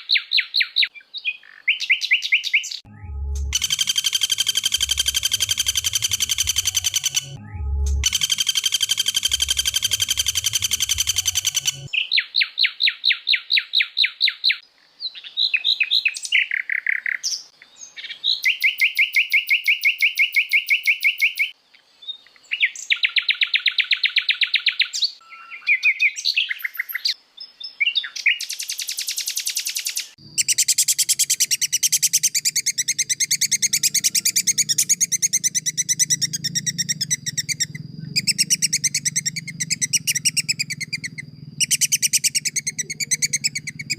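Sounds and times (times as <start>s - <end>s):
songbird trills and chirps: 0.0s - 43.9s
low hum: 2.9s - 11.9s, 32.3s - 43.9s.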